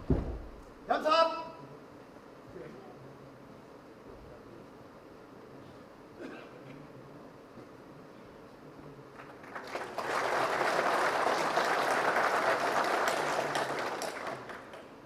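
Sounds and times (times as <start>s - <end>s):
audience applauding: 9.1s - 15.0s.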